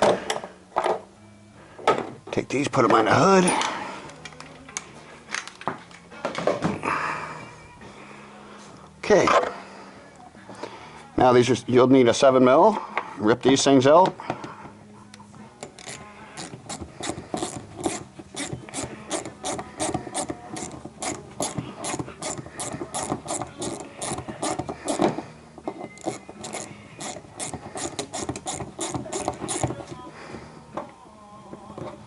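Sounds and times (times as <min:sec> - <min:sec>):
ratchet wrench clicking: 0:15.6 - 0:25.1, 0:26.0 - 0:29.8.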